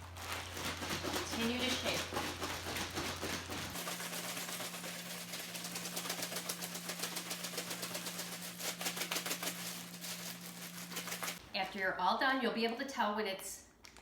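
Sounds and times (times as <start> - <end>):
ice cubes rattling in a bag: 0.0 - 11.4.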